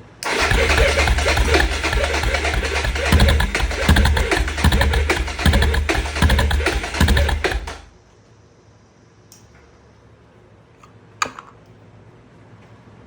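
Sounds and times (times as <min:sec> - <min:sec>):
electric starter cranking engine: 0:00.0 - 0:07.9.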